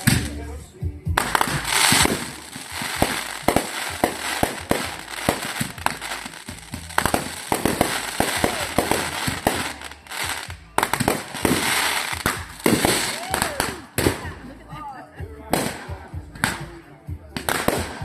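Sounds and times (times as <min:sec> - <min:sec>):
fireworks bangs: 0:00.0 - 0:00.4, 0:01.2 - 0:14.5, 0:17.4 - 0:18.0.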